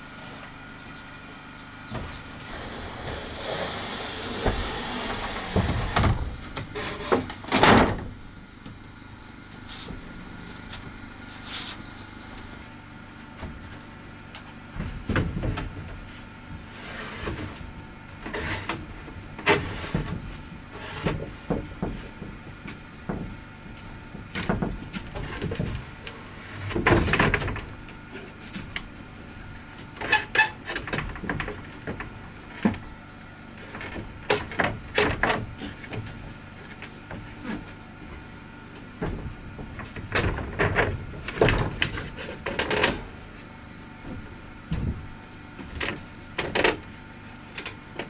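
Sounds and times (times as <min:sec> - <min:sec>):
wood scraping on wood: 0:01.9 - 0:08.8, 0:09.5 - 0:48.0
wooden boards knocking: 0:18.6 - 0:26.0.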